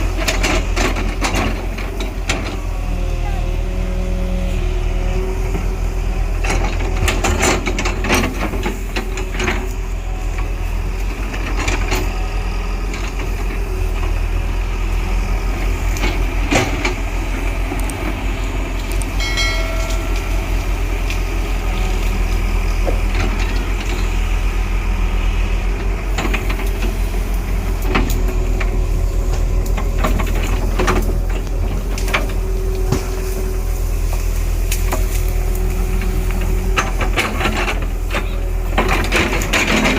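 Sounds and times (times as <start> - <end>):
diesel engine running: 0.0 - 39.9
metallic clanks and knocks: 18.8 - 21.2.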